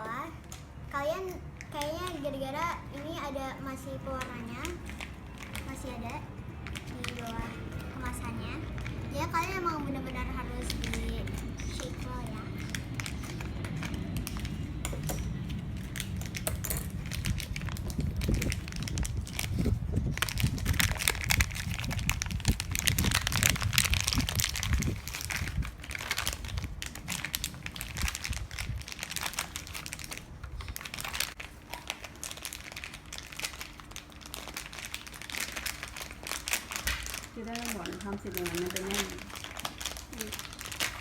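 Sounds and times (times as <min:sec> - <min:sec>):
low rumbling: 0:03.6 - 0:31.4
plastic container being shaken: 0:09.9 - 0:41.0.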